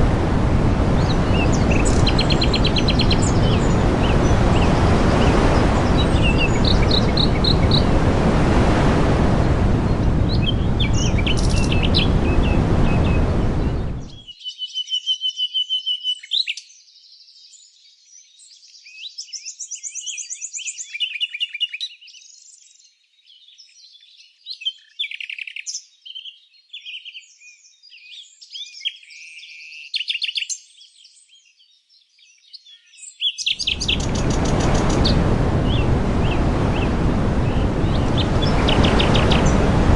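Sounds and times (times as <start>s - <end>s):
loud steady rushing noise: 0.0s - 14.2s, 33.6s - 39.9s
songbirds chirping and trilling: 0.8s - 8.2s, 9.4s - 39.9s.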